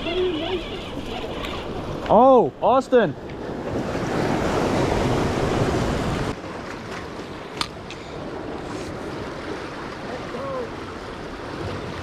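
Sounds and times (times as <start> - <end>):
ocean surf washing against jetty: 0.0 - 12.0
wind on microphone: 3.4 - 6.4.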